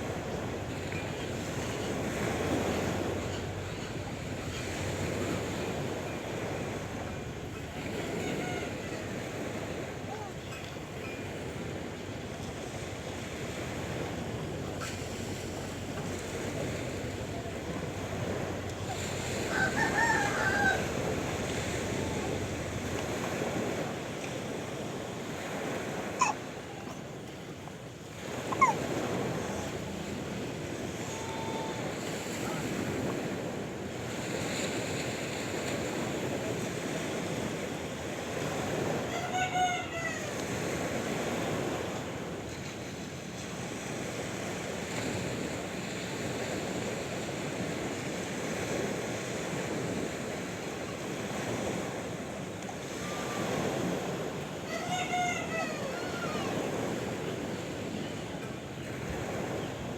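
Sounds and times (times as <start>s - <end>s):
sea waves washing in: 0.0s - 59.9s
rooster crowing: 18.9s - 22.2s, 39.1s - 40.4s, 54.7s - 56.7s
short pitched calls: 26.1s - 27.1s, 28.3s - 29.8s, 54.6s - 56.6s.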